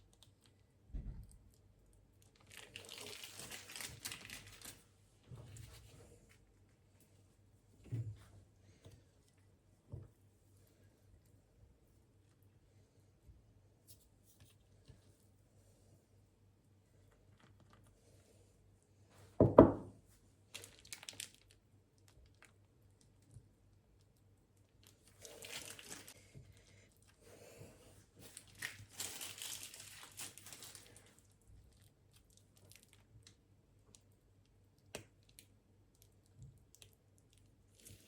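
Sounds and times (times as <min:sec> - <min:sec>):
crinkling and tearing: 0:02.2 - 0:04.9, 0:20.5 - 0:22.6, 0:24.8 - 0:26.3, 0:28.2 - 0:33.4.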